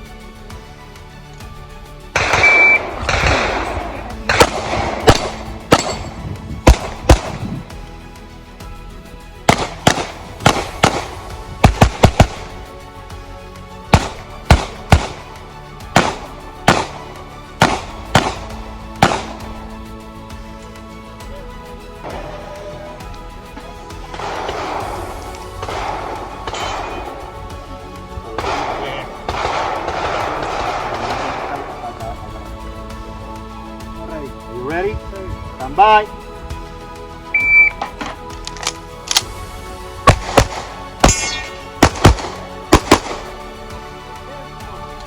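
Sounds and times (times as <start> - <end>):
faint background music: 0.0 - 45.0
pistol shots: 2.2 - 7.5, 9.5 - 12.6, 13.9 - 15.4, 16.0 - 19.6, 24.1 - 27.2, 28.4 - 31.8, 40.0 - 43.4
short electronic beep: 2.4 - 2.8, 37.4 - 37.8.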